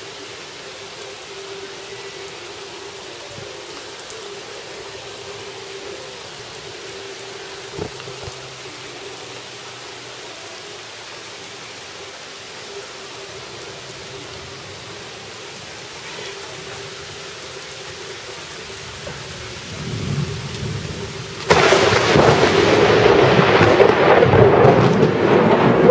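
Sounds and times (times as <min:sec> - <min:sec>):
steady rain: 0:00.0 - 0:25.9
thunder rumbling: 0:01.6 - 0:09.5, 0:13.2 - 0:25.9
loud thunderclap: 0:19.8 - 0:25.9.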